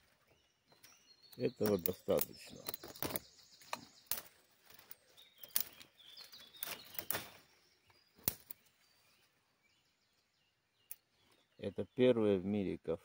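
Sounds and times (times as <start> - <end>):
birds chirping: 0.0 - 13.0
dry wood cracking: 0.7 - 8.7.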